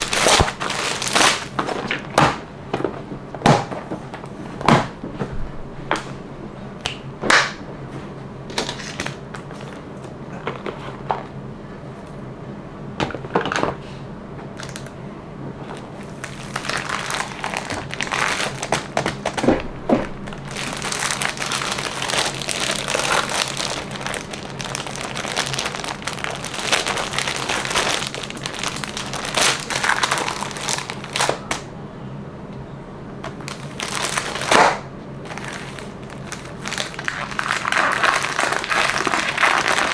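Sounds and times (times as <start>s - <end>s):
plastic wrapping crinkling: 0.0s - 2.4s, 14.6s - 15.0s, 15.6s - 31.7s, 33.2s - 39.9s.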